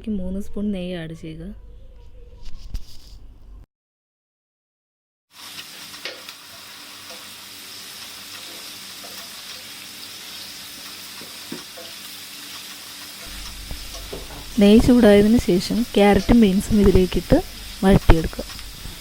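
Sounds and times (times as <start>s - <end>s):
ghee sizzling in a frying pan: 5.3s - 19.0s.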